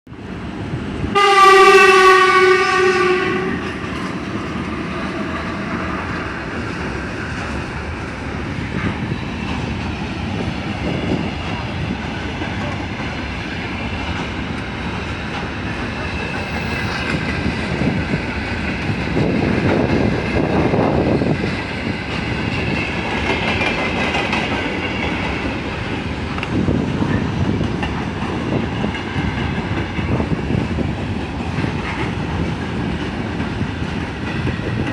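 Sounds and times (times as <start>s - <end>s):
train wheels clattering over rails: 2.0s - 34.9s.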